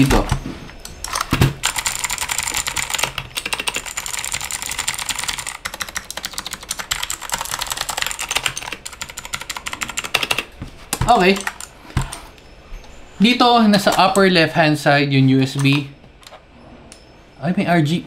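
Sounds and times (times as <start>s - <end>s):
mechanical keyboard typing: 0.0s - 12.2s.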